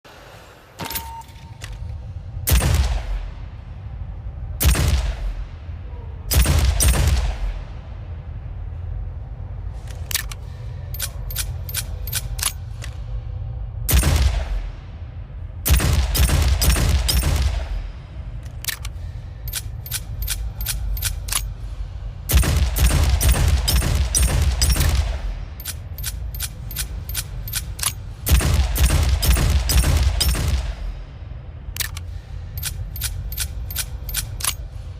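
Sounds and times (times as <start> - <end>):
gun mechanism clicks: 9.9 - 13.0, 18.4 - 21.5, 25.6 - 28.0, 31.8 - 34.6
revolver gunshots: 13.9 - 14.7, 15.7 - 17.9, 22.3 - 31.0.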